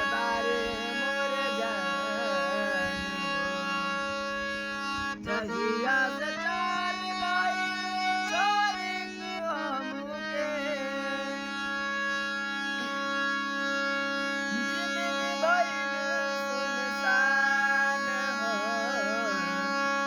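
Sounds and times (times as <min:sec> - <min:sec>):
harmonium melody over drone: 0:00.0 - 0:20.0.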